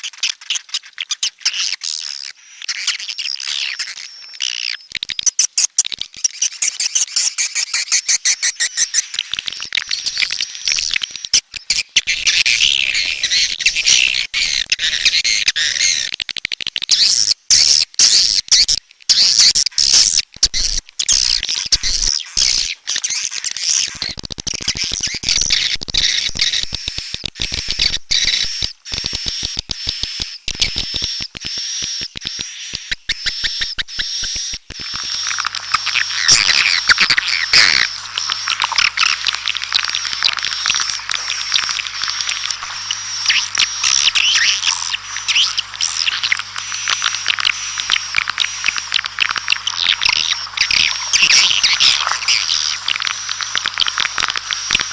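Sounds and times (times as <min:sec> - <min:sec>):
swiftlets twittering: 0:20.5 - 0:54.9
sharp clicks: 0:23.8 - 0:54.9.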